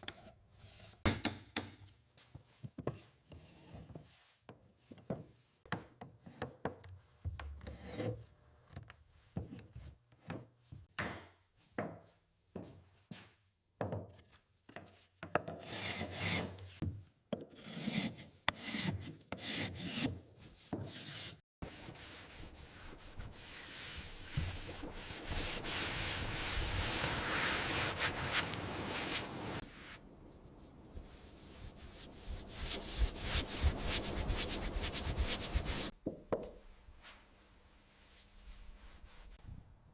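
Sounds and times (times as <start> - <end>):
hand tool scraping wood: 17.5 - 20.2
steady hiss: 22.3 - 35.9.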